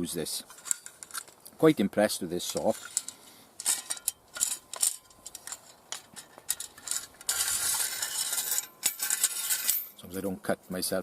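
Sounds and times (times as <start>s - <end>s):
scraping rustle: 0.1s - 10.3s
light metallic clicks and clinks: 2.4s - 10.3s.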